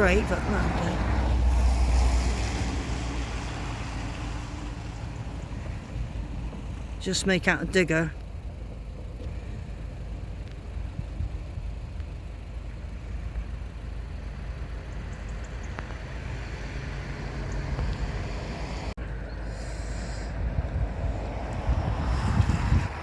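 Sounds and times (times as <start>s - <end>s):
distant road traffic: 0.0s - 23.0s
wind buffeting microphone: 20.3s - 23.0s.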